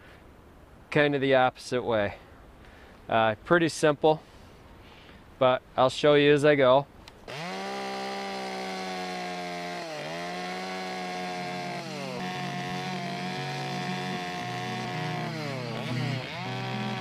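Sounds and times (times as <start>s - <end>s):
chainsaw carving wood: 7.2s - 17.0s.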